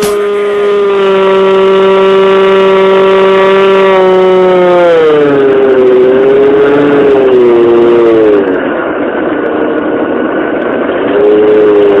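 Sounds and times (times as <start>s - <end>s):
electric motor and propeller droning: 0.0s - 12.0s
rushing air: 4.0s - 12.0s.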